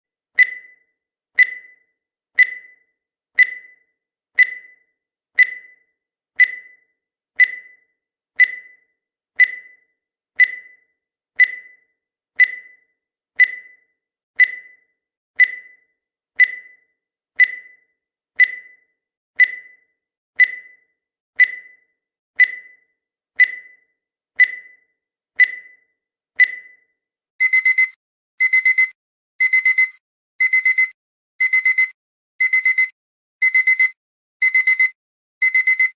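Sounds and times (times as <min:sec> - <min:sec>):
timer ticking: 0:02.4 - 0:02.8, 0:03.4 - 0:03.8, 0:04.4 - 0:04.8, 0:05.4 - 0:05.8, 0:06.4 - 0:06.8, 0:07.4 - 0:07.8, 0:08.4 - 0:08.8, 0:09.4 - 0:09.8, 0:10.4 - 0:10.8, 0:12.4 - 0:12.8, 0:27.4 - 0:35.9
rapid electronic alarm beeps: 0:27.4 - 0:35.9.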